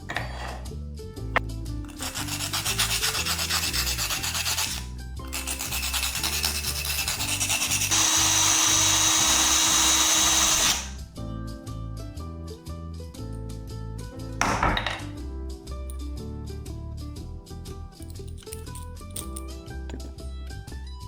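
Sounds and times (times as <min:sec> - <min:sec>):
background music: 0:00.0 - 0:21.0
shell rubbed against abrasive: 0:01.9 - 0:08.2
rotary tool drilling whine: 0:05.4 - 0:11.0.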